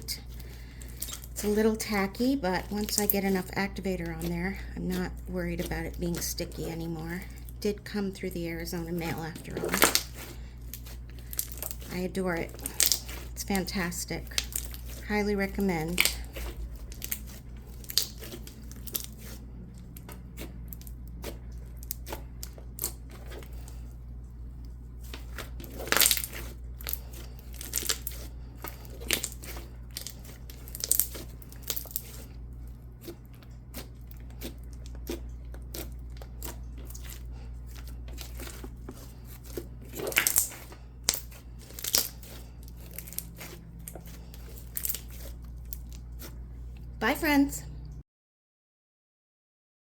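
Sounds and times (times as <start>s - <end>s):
slime crackling and popping: 9.1s - 19.4s, 20.0s - 23.7s, 25.0s - 32.3s, 33.0s - 46.3s.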